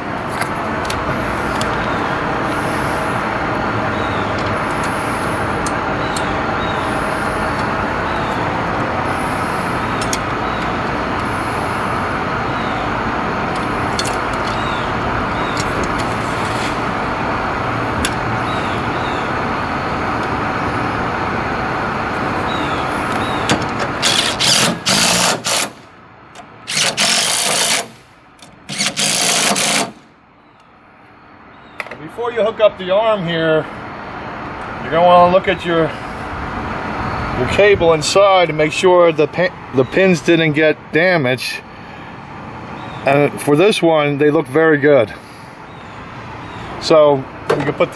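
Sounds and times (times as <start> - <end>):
vehicle running: 0.0 - 47.9
power tool bursts: 24.0 - 25.8, 26.7 - 28.1, 28.7 - 30.1.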